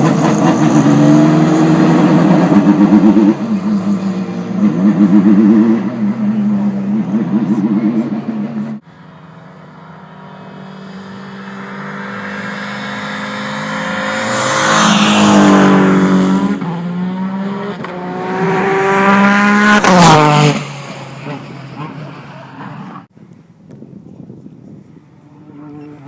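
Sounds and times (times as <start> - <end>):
race car engine revving: 0.0 - 8.8, 9.6 - 23.1.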